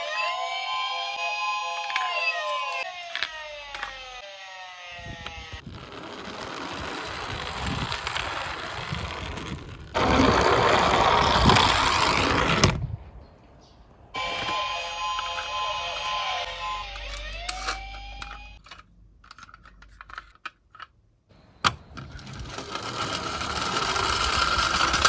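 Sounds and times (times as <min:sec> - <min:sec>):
falling siren tone: 0:00.0 - 0:05.7, 0:14.2 - 0:18.6
toy cars rattling down a slope: 0:01.7 - 0:12.8, 0:21.9 - 0:25.0.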